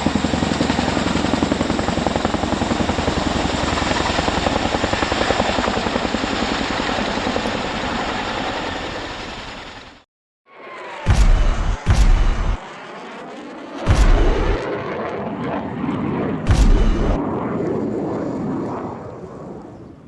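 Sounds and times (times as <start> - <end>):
helicopter rotor blades beating: 0.0 - 10.0, 10.8 - 15.5, 16.2 - 17.4
high turbine whine: 10.6 - 14.8, 16.5 - 17.3.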